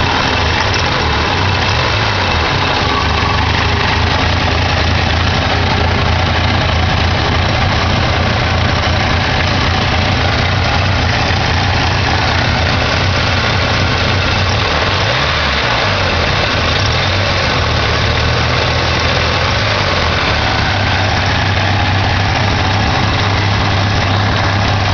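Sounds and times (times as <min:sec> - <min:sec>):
car engine idling roughly: 0:00.0 - 0:24.9.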